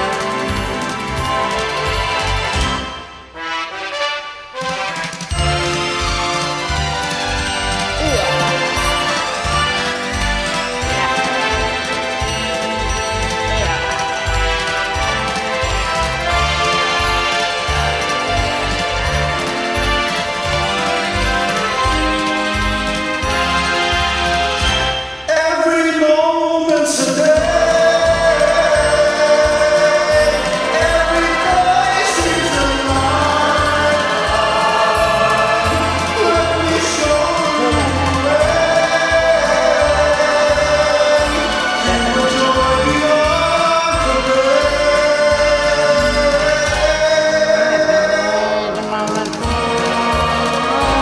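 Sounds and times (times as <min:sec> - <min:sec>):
karaoke backing music: 0:00.0 - 0:03.0, 0:05.2 - 0:25.8, 0:26.9 - 0:51.0
person singing long notes: 0:27.2 - 0:51.0.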